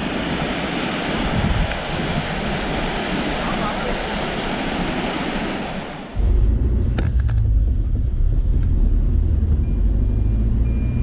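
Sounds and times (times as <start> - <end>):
car driving rumble: 6.2 - 11.0.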